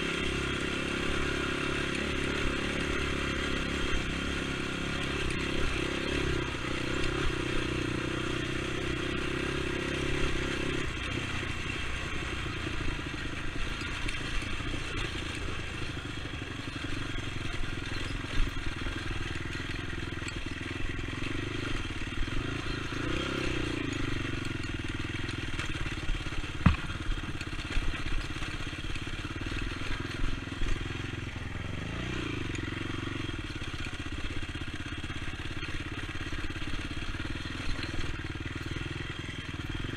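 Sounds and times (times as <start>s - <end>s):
atv engine running: 0.0s - 39.9s
sharp knock: 26.6s - 26.9s.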